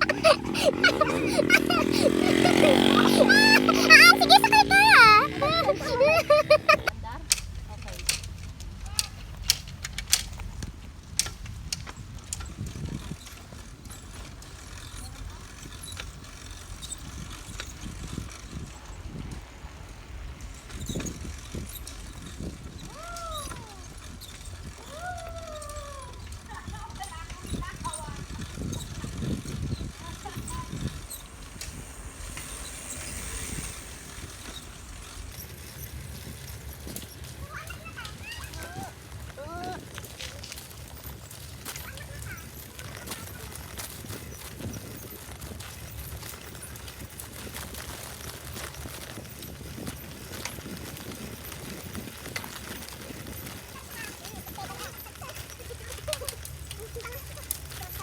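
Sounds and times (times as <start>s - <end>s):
bicycle clicking and rattling: 0.0s - 58.0s
low rumble: 27.2s - 37.8s.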